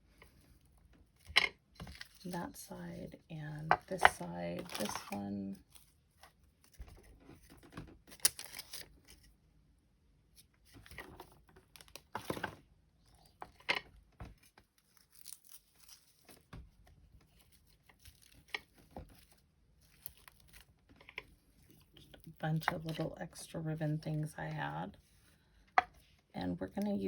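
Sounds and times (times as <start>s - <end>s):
paper and plastic crinkling: 3.7s - 9.3s, 17.2s - 23.0s.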